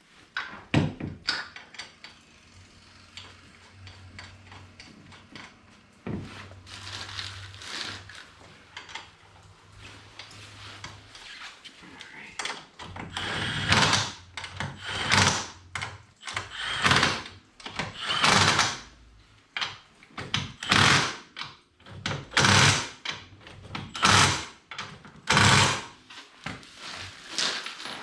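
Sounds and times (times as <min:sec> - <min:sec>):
impact wrench bursts: 0:13.1 - 0:15.6, 0:16.2 - 0:18.9, 0:20.5 - 0:21.3, 0:22.3 - 0:23.0, 0:23.9 - 0:24.6, 0:25.2 - 0:26.0.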